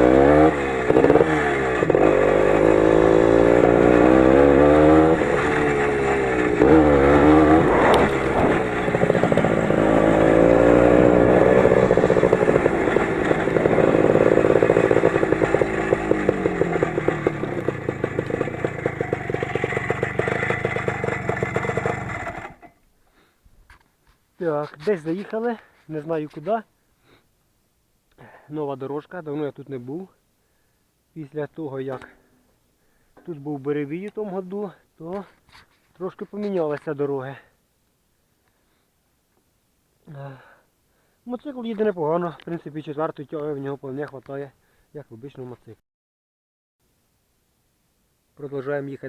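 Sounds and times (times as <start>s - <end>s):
motorcycle engine revving: 0.0s - 22.7s.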